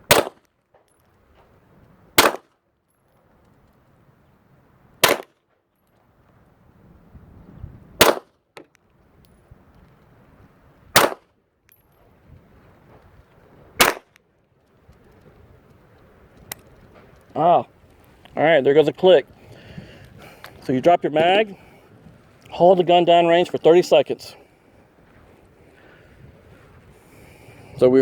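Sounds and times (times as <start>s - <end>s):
pistol shots: 0.1s - 0.5s, 2.2s - 2.5s, 5.0s - 5.4s, 8.0s - 8.3s, 11.0s - 11.2s, 13.8s - 14.1s.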